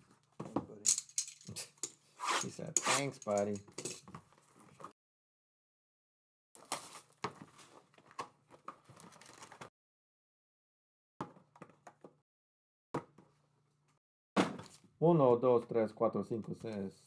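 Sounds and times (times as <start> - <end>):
cards and holders clicking: 2.8 - 4.0.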